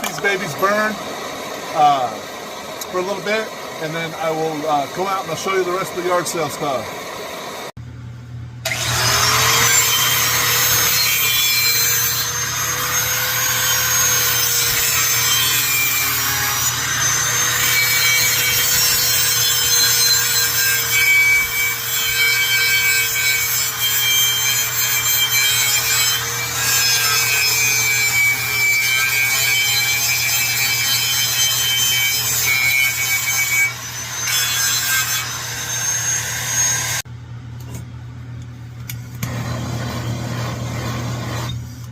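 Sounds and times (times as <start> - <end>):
camp stoves hissing: 0.2 - 5.9.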